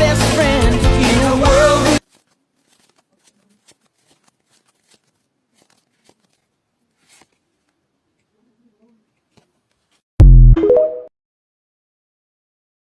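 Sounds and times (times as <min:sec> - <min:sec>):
pop music with singing: 0:00.0 - 0:02.0
trading cards rustling: 0:01.9 - 0:08.3.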